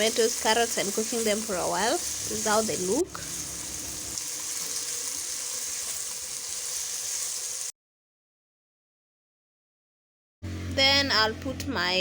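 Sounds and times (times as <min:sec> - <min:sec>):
food sizzling in a pot: 0:00.0 - 0:07.8.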